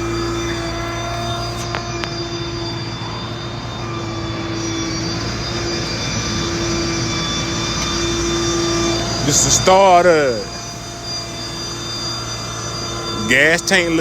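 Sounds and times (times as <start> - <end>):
machine drone with whining tones: 0.0 - 14.0.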